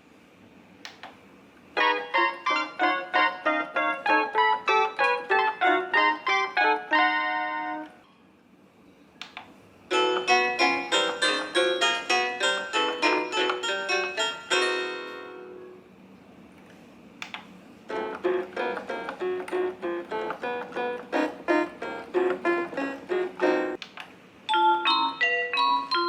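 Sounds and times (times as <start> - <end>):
mini keyboard piano melody: 1.8 - 8.1, 9.9 - 15.9, 17.8 - 23.8, 24.5 - 26.0.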